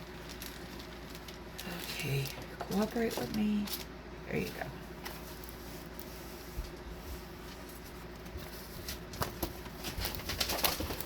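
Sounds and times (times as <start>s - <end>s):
packaging rustling and tapping: 7.7s - 11.0s.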